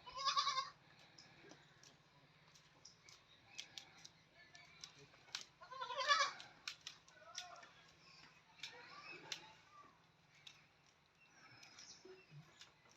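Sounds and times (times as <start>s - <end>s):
goats bleating: 0.0s - 0.8s, 5.6s - 6.4s.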